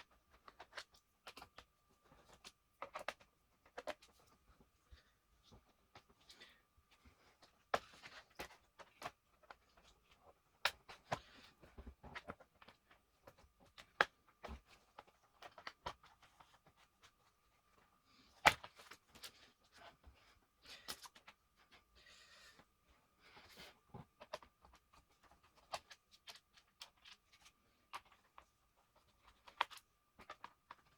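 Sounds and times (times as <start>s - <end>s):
plastic laptop parts clicking: 0.3s - 4.2s, 29.0s - 30.9s.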